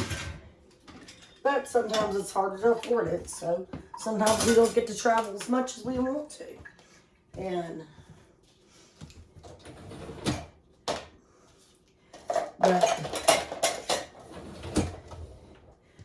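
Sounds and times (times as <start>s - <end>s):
dishes and silverware clinking: 3.2s - 5.5s, 12.2s - 14.2s.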